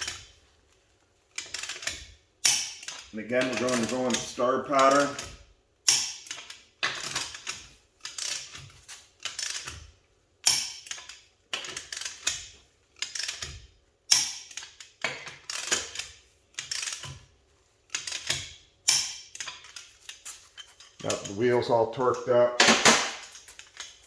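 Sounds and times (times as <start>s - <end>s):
torque wrench ratcheting: 1.4s - 17.2s.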